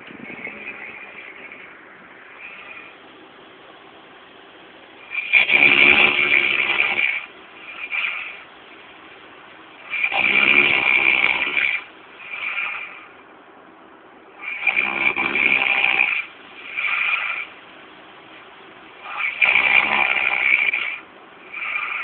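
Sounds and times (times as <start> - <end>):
person snoring: 5.1 - 8.4, 9.9 - 13.1, 19.0 - 22.0.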